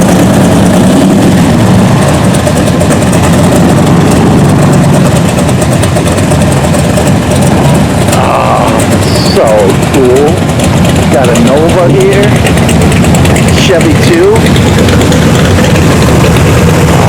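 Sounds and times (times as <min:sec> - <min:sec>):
engine idling with deep rumble: 0:00.0 - 0:17.0.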